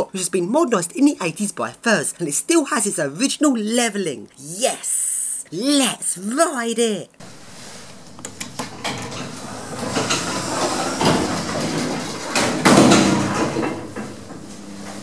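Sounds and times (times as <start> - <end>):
lift doors sliding: 7.2 - 15.0
clicks and clunks: 8.1 - 15.0.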